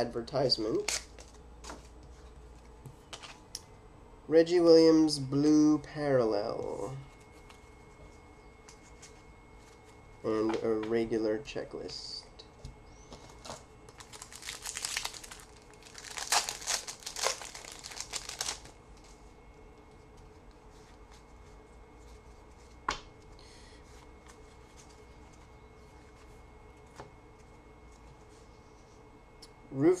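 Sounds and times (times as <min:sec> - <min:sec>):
wrapper being torn and crinkled: 0:00.8 - 0:01.2, 0:13.9 - 0:18.8.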